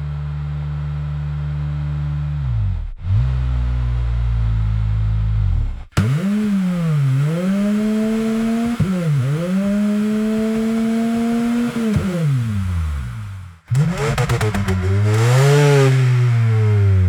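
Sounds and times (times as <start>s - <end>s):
low steady engine sound: 0.0s - 7.8s
car engine revving high: 2.4s - 17.0s.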